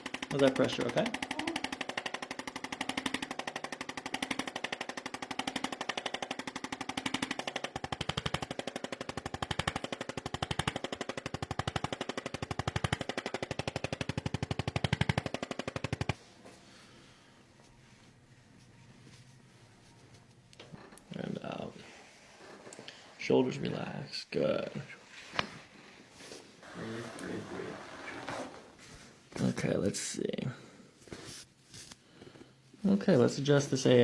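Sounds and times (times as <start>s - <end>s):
massage gun hammering: 0.0s - 16.2s.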